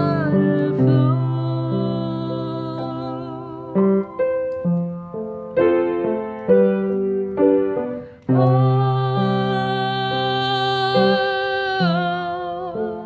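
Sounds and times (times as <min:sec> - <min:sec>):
person singing: 0:00.0 - 0:04.4, 0:08.2 - 0:13.0
piano chords: 0:00.0 - 0:13.0.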